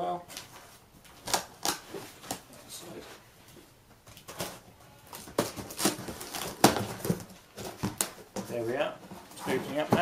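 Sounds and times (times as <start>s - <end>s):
cardboard scrapes rustles and knocks: 8.5s - 10.0s.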